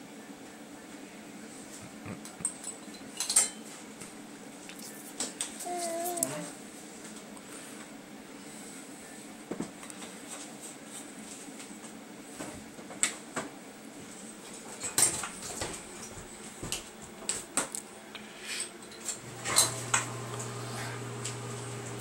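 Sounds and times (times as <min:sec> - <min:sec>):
dishes and utensils clinking: 0:02.3 - 0:03.7.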